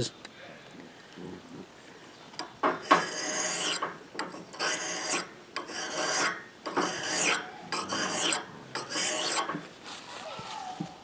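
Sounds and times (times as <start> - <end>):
blade scraping on sharpening stone: 2.8 - 9.6.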